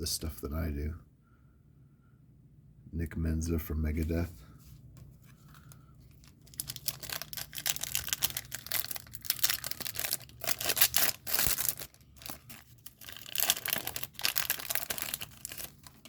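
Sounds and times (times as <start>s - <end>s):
wrapper tearing and crinkling: 5.5s - 16.0s.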